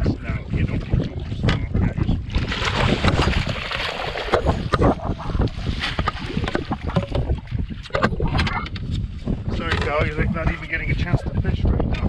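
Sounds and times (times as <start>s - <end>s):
water slapping against hull: 0.0s - 12.0s
wind buffeting microphone: 0.0s - 12.0s
short knocks and splashes: 2.3s - 8.7s.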